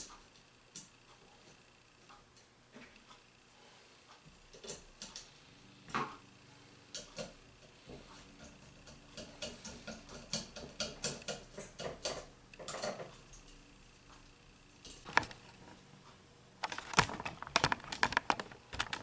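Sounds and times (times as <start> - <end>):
clicks and taps of parts and tools: 8.4 - 13.5.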